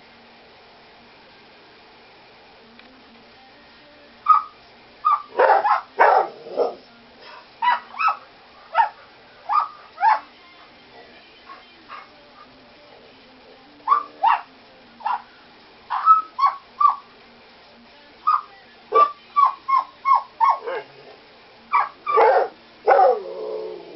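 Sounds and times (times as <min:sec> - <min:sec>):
bird mimicking dog barks: 0:15.9 - 0:17.1, 0:18.3 - 0:20.8.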